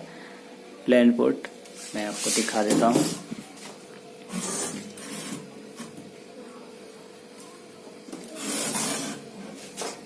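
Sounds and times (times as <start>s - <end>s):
faint hum: 0.0s - 1.6s
rustles or scrapes: 1.7s - 3.2s, 8.3s - 10.0s.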